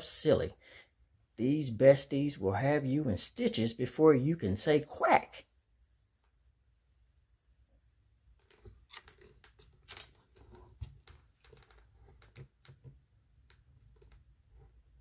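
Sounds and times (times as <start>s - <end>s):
book rustling: 8.4s - 13.0s.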